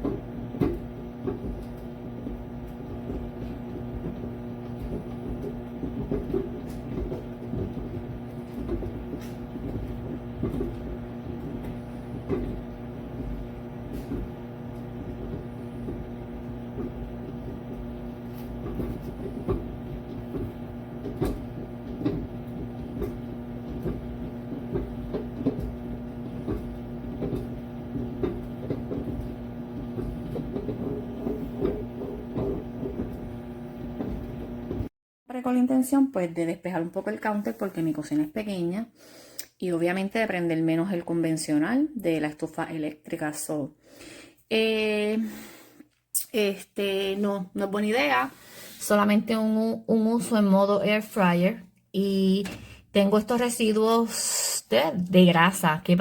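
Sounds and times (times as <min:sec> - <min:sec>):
oven electrical hum: 0:00.0 - 0:34.9.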